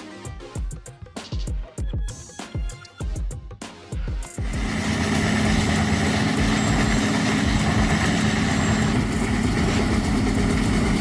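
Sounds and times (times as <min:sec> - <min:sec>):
heavy machine engine running: 0:04.4 - 0:11.0.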